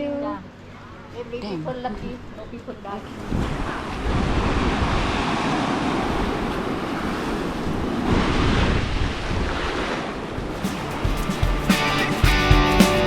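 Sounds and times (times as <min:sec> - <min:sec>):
sea surf washing ashore: 0:03.1 - 0:13.0
wind rumbling on microphone: 0:03.2 - 0:10.7.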